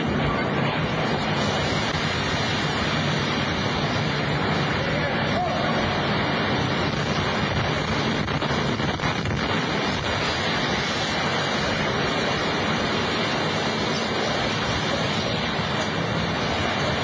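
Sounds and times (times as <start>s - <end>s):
loud rushing roar of debris: 0.0s - 17.0s.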